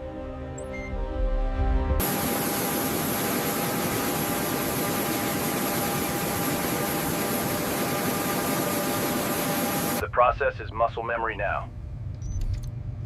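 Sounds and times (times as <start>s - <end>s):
music: 0.0s - 2.0s
aircraft turbine engine whine: 2.0s - 11.3s.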